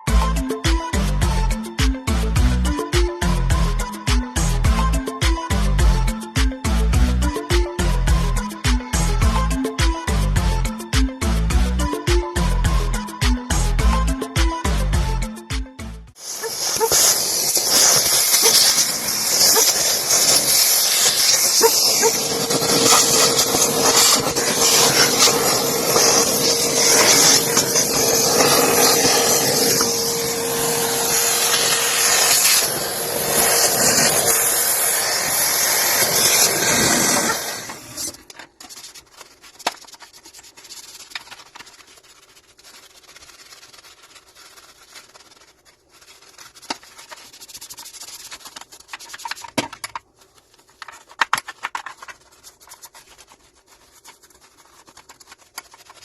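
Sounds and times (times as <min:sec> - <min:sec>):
steam wand hissing: 0:16.2 - 0:38.2
faint rubbing and handling: 0:37.7 - 0:56.0.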